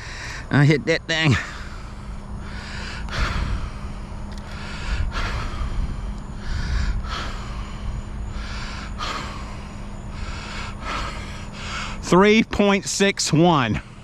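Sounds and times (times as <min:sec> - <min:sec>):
man breathing hard: 0:00.0 - 0:00.5, 0:01.4 - 0:12.1, 0:13.8 - 0:14.0
steady low hum: 0:00.0 - 0:14.0
low rumble: 0:01.4 - 0:12.3.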